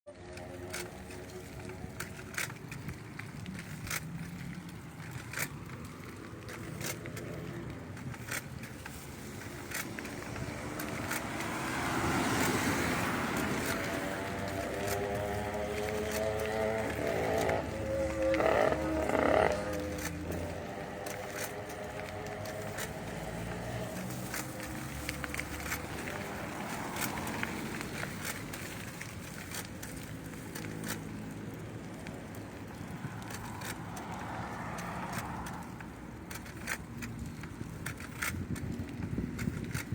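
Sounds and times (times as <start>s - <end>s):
bicycle gear clicks: 0.1s - 39.9s
drivetrain rushing noise: 0.4s - 39.9s
wind on microphone: 37.2s - 39.9s.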